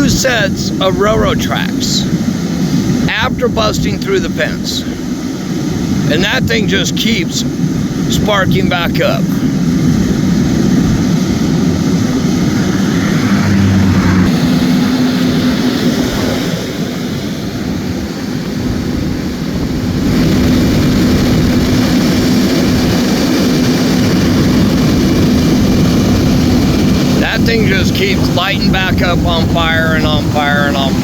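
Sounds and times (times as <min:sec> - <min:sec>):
constant rushing noise: 0:00.0 - 0:31.0
large engine humming: 0:08.9 - 0:31.0.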